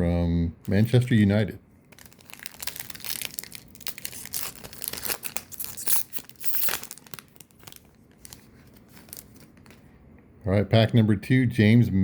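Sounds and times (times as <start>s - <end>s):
foil wrapper crinkling and tearing: 1.9s - 9.8s.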